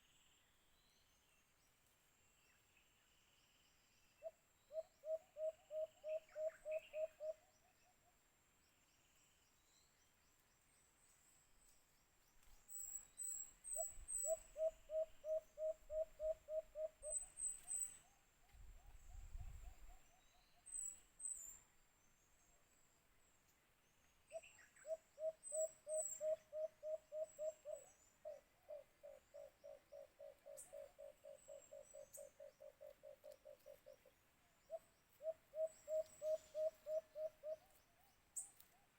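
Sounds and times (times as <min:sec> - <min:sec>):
dove hooting: 0:04.2 - 0:07.5, 0:13.8 - 0:20.3, 0:24.3 - 0:37.8
small birds chirping: 0:08.9 - 0:38.9.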